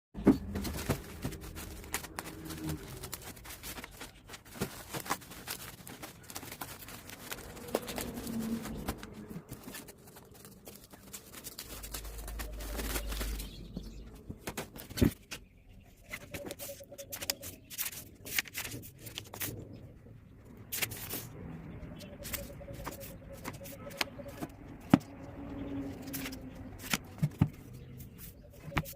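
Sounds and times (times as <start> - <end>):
packaging rustling and crinkling: 0.2 - 15.4.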